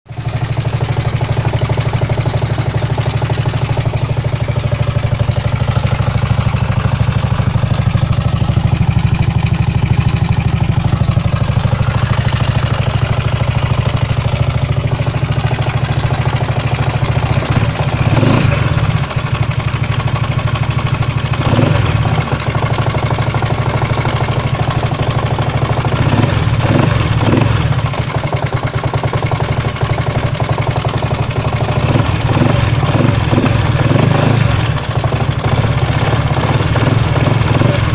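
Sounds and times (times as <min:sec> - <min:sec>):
scooter engine idling with knock: 0:00.1 - 0:37.9.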